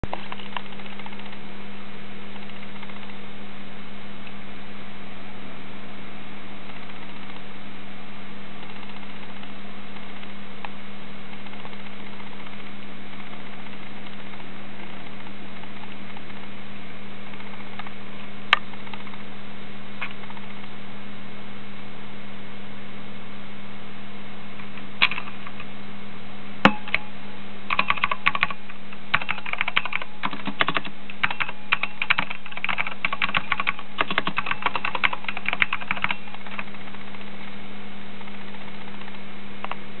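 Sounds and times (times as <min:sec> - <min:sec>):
steady low hum: 0:00.0 - 0:40.0
mechanical keyboard typing: 0:25.0 - 0:25.7, 0:27.7 - 0:37.3.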